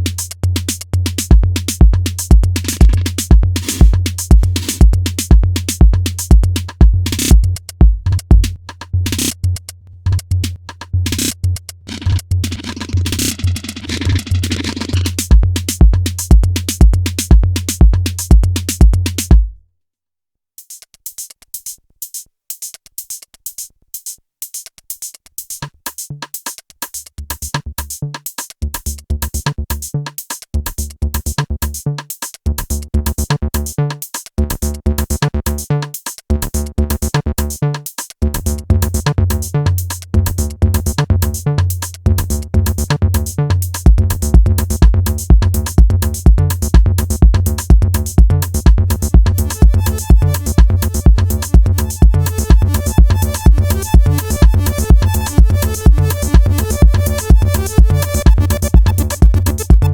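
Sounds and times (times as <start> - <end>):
kick drum: 0.0 - 9.3, 15.2 - 19.6, 43.7 - 59.9
hi-hat ticks: 0.0 - 19.5, 20.6 - 36.3, 36.9 - 59.9
techno drum machine jam: 0.0 - 19.6, 20.6 - 59.9
synth bass line: 44.0 - 59.9.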